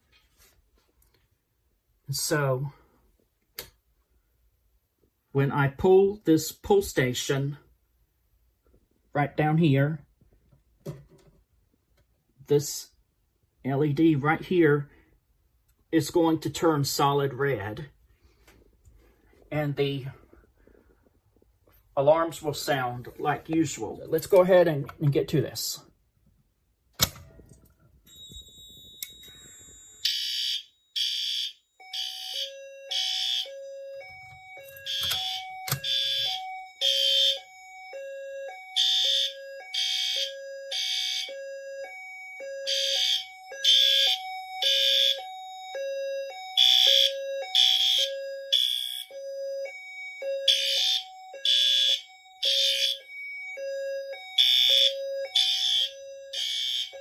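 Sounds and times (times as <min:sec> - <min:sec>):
alarm alternating two tones: 0:28.1 - 0:57.0
fire alarm horns: 0:28.1 - 0:57.0.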